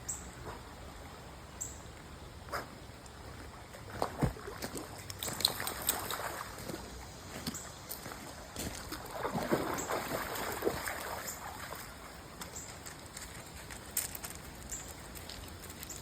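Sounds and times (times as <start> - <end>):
dog splashing in water: 3.9 - 7.0, 8.4 - 12.1.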